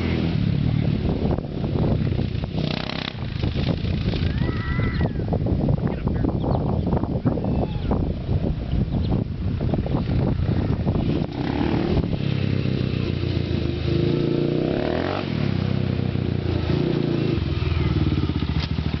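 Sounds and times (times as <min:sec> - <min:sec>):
quad engine running under throttle: 0:00.0 - 0:04.6, 0:09.9 - 0:19.0.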